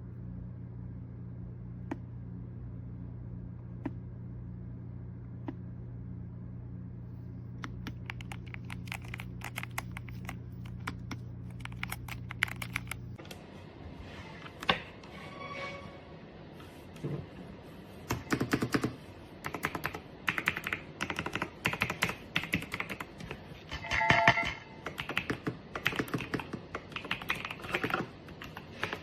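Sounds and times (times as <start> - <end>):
low hum: 0.0 - 18.0
mechanical keyboard typing: 7.6 - 13.2, 18.1 - 23.3, 24.8 - 29.0.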